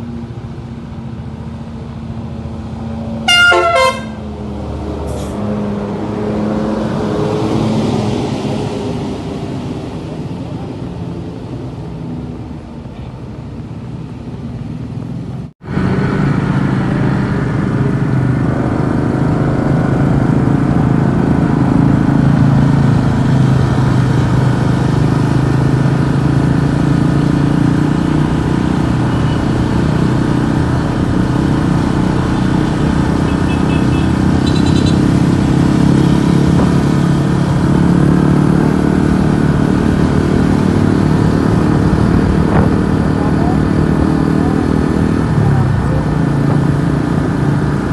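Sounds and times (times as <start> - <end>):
vehicle engine running: 11.9 - 47.9.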